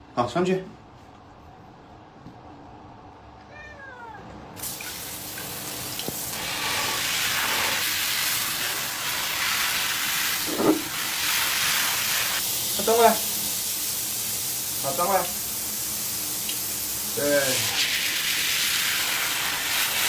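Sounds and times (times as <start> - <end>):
cat meowing: 3.4 - 4.4
water spraying hiss: 4.6 - 20.0.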